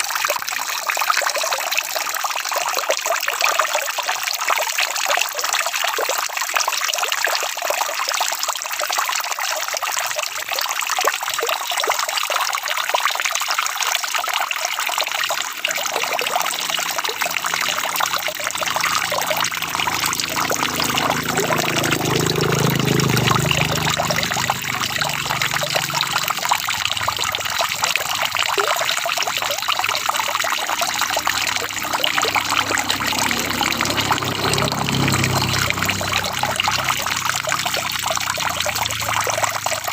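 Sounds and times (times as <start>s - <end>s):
low hum: 15.7s - 39.9s.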